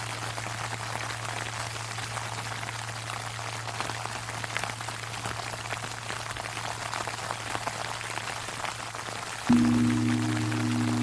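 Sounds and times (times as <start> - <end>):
temple bell humming: 9.5 - 11.0.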